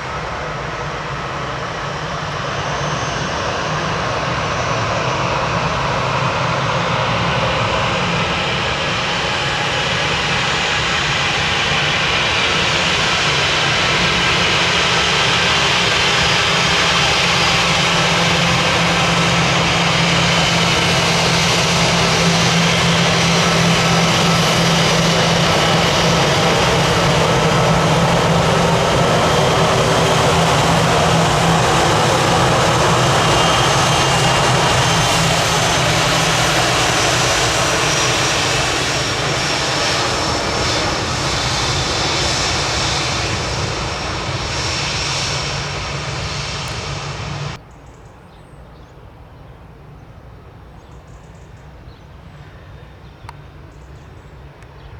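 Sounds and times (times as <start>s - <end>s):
jet engines roaring: 0.0s - 47.6s
faint high engine whine: 0.0s - 48.6s.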